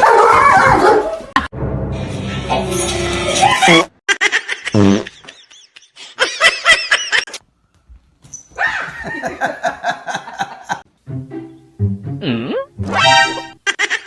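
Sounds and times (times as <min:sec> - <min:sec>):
person laughing: 0:08.8 - 0:10.8.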